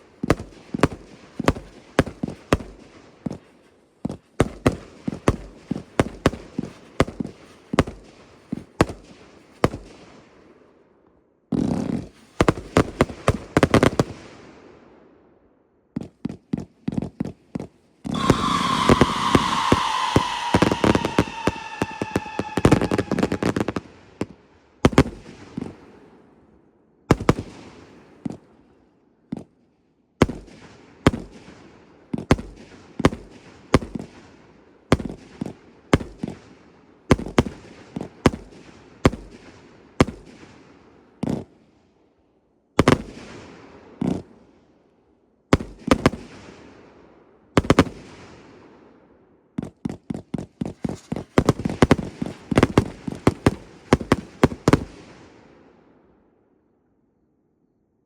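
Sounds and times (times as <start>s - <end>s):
firework whistle: 18.1s - 23.8s
fireworks shots: 18.1s - 24.3s.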